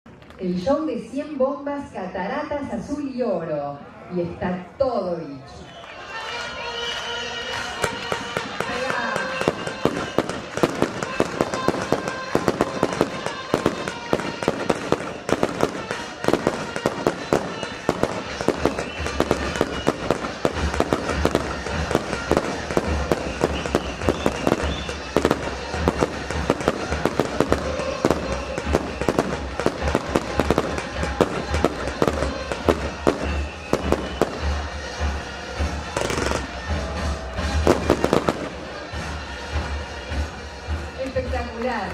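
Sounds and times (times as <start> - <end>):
fireworks pops and bangs: 7.5 - 41.9.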